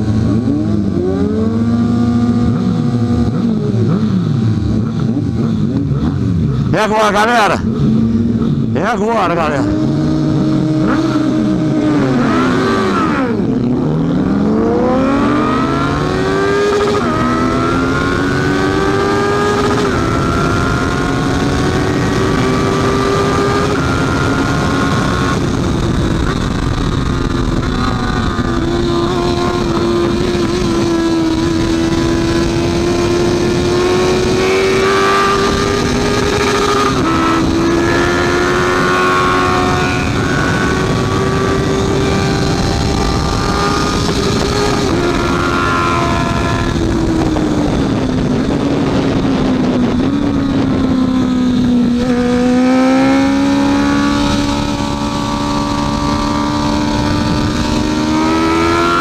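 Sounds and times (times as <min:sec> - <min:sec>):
motorcycle engine at high revs: 0:00.0 - 0:59.0
other motorcycle engines: 0:00.0 - 0:59.0.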